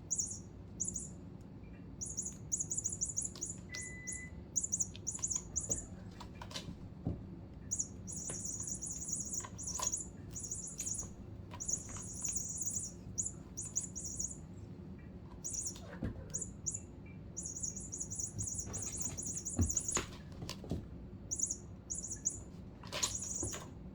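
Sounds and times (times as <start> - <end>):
electronic toy squeaking: 0.0 - 1.1, 2.0 - 6.1, 7.7 - 14.4, 15.4 - 16.8, 17.4 - 20.1, 21.3 - 22.4, 23.0 - 23.6.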